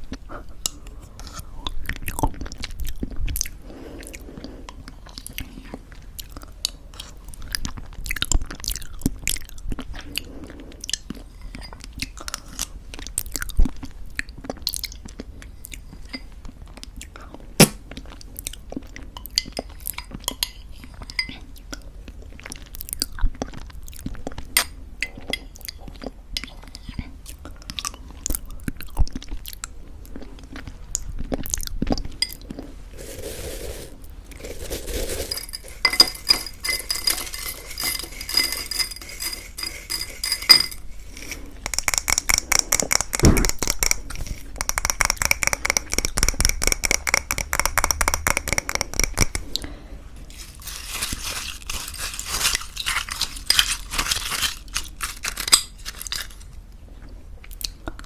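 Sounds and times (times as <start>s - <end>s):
spoon scraping a bowl: 32.2s - 49.6s, 50.3s - 56.5s
chewing crunchy granola: 50.2s - 56.6s.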